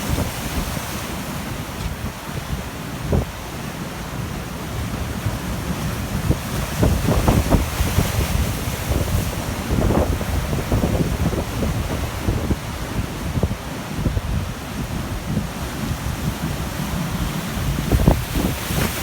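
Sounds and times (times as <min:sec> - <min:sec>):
storm surf breaking on shore: 0:00.0 - 0:19.0
wind buffeting microphone: 0:04.8 - 0:19.0.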